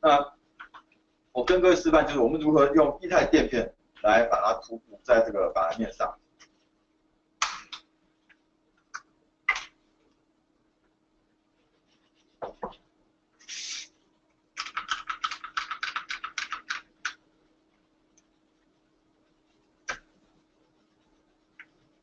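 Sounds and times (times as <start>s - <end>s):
short hiss: 13.4s - 14.0s.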